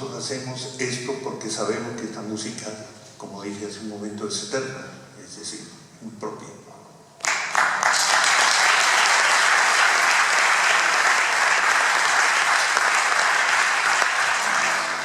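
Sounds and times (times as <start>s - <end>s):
audience applauding: 7.2s - 15.0s.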